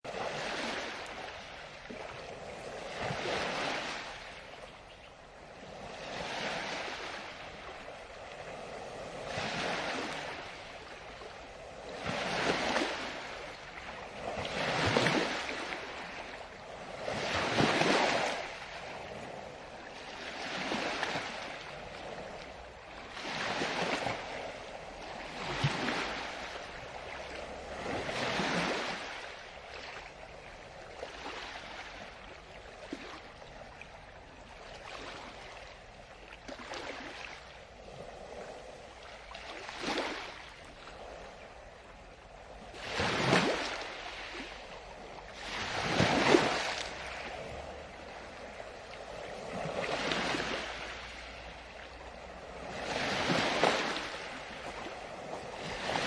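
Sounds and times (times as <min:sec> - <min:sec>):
ocean waves washing up shore: 0:00.0 - 0:56.0.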